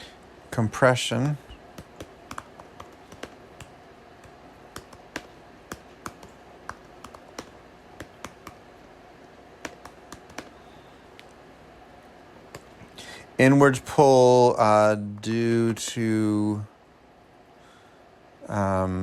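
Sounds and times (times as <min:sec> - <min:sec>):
faint hum: 0:00.0 - 0:19.0
typing on computer keyboard: 0:01.8 - 0:08.6, 0:09.6 - 0:10.5.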